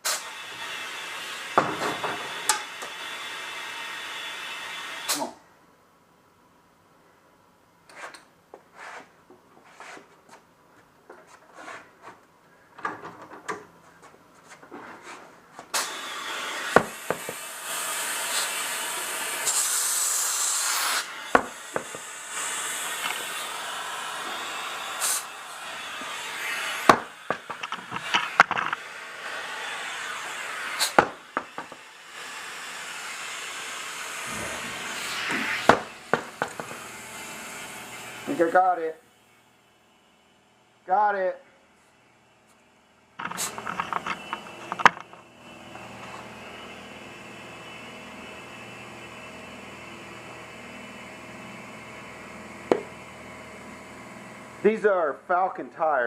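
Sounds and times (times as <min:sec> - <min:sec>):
compressed air hissing into tire: 0:00.0 - 0:01.0, 0:15.7 - 0:37.1
small clicks and knocks: 0:27.3 - 0:28.8, 0:43.2 - 0:45.2.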